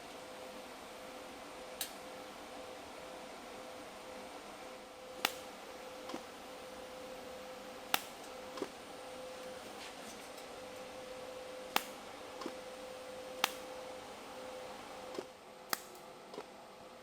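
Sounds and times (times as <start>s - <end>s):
welder humming: 3.2s - 16.6s
sharp welding ticks: 5.2s - 5.6s, 7.9s - 8.3s, 11.7s - 12.6s, 13.4s - 13.8s.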